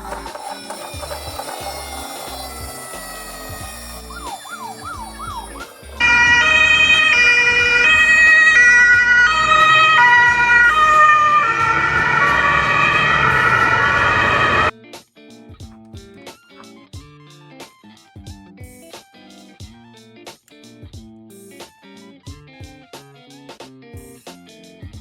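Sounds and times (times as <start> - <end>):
toy ambulance siren: 0.0 - 14.7.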